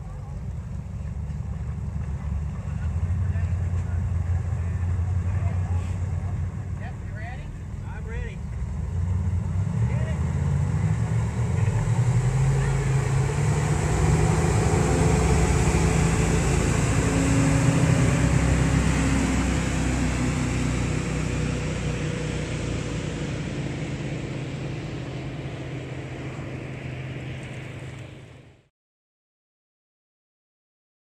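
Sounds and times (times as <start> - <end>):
jet boat engine running: 9.4 - 28.6.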